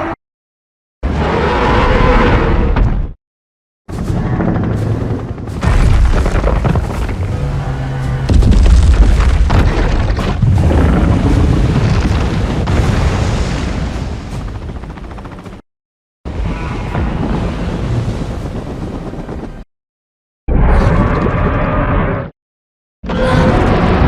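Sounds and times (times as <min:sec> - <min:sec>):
deep booming monster rumble: 0:03.9 - 0:15.3, 0:16.3 - 0:19.6.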